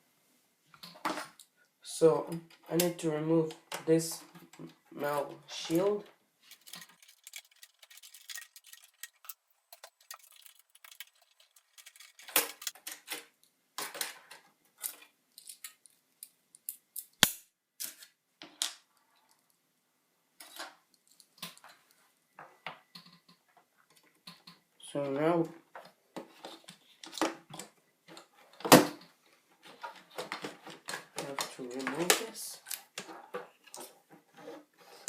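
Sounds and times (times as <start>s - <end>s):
small metal clicks and scrapes: 5.6s - 13.2s.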